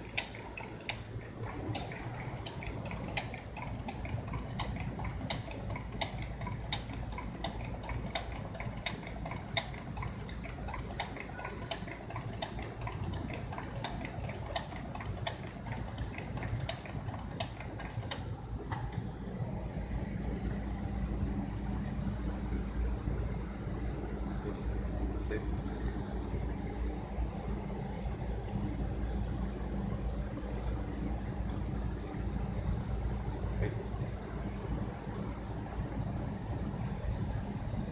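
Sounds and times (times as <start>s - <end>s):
sharp machine clicks: 0.0s - 18.9s
machine humming: 0.0s - 37.9s.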